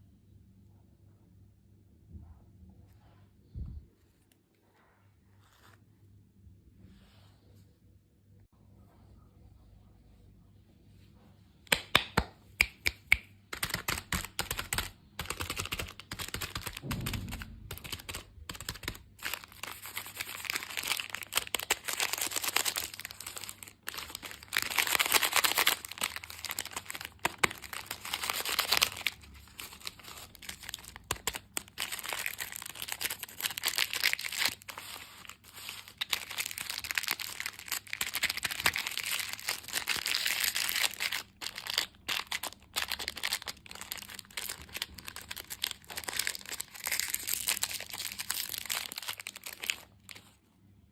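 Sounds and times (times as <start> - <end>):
plastic packaging crinkling: 13.5 - 50.4.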